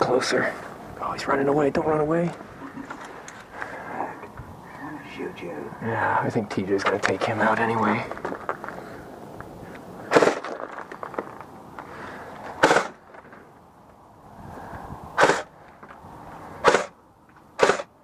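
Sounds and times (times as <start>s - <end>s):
airsoft rifle firing single shots: 10.1s - 10.5s, 12.6s - 13.0s.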